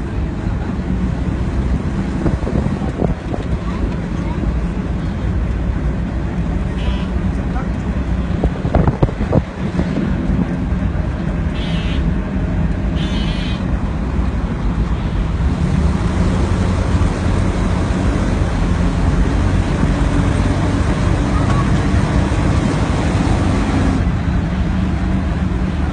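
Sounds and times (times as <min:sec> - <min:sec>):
boat engine drone: 0:00.0 - 0:25.9
wind buffeting microphone: 0:00.8 - 0:04.8, 0:08.1 - 0:11.5.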